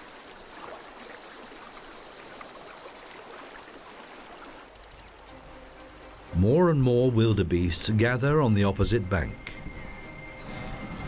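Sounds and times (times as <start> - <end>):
flowing river water: 0.0 - 8.0.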